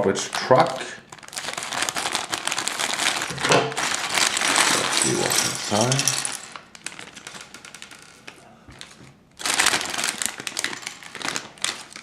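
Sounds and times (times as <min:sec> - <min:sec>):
plastic packaging crinkling: 0:00.0 - 0:12.0
plastic pieces clicking and rattling: 0:03.2 - 0:08.4.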